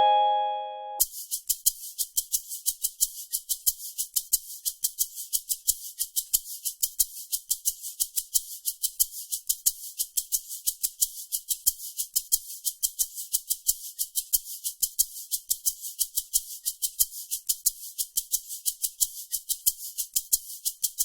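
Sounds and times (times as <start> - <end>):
maracas shaken in rhythm: 1.0 - 21.0.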